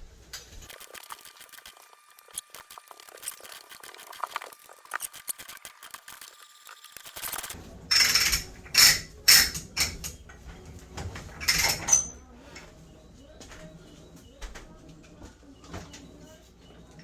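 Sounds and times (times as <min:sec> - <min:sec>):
metallic scrapes and clanks: 0:07.2 - 0:10.2, 0:11.0 - 0:12.7.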